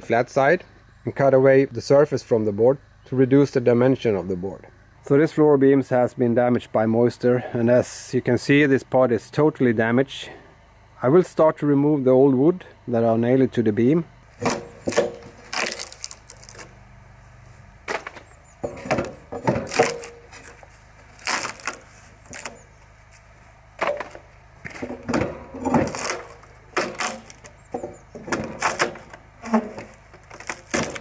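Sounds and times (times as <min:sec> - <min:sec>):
wood cracking and creaking: 0:14.4 - 0:16.7, 0:17.9 - 0:22.7, 0:23.8 - 0:31.0.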